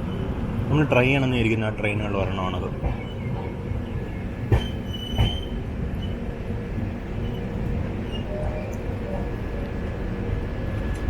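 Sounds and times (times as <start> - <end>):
train coach rumbling on track: 0.0 - 11.0
high wheel squeal: 4.6 - 6.2.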